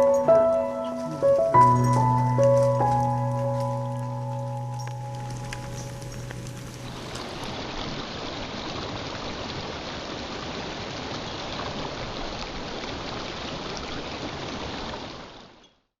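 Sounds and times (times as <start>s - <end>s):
stream running water: 0.0s - 15.9s.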